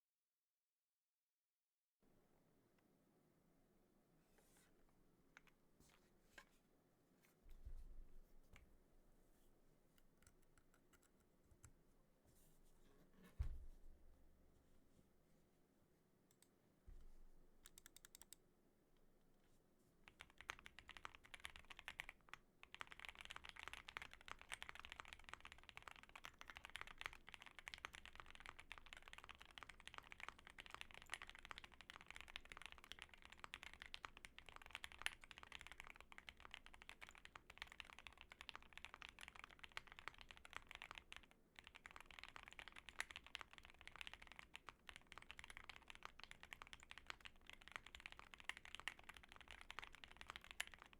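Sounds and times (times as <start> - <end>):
typing on mechanical keyboard: 17.7 - 18.4, 20.1 - 50.9.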